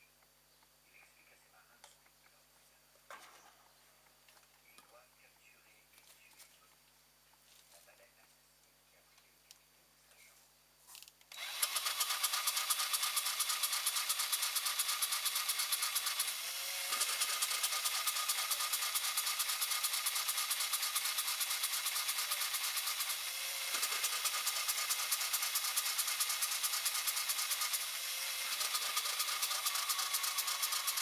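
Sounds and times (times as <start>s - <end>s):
power tool pulsing: 11.3s - 31.0s.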